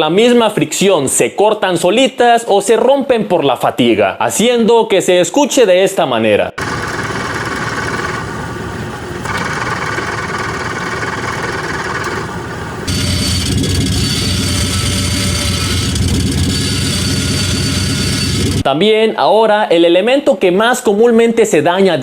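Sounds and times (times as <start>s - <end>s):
car engine running: 6.6s - 12.9s
damaged clutch noise: 6.6s - 13.4s.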